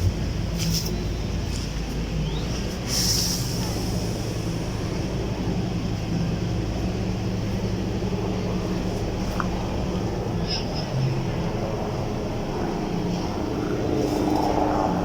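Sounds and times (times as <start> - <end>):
engine humming steadily: 0.0 - 15.0.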